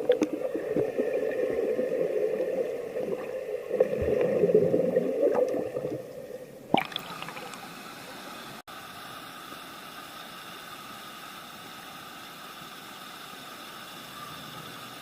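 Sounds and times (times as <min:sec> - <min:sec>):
water gurgling and sloshing: 0:00.0 - 0:08.6
faint steady hiss: 0:00.0 - 0:15.0.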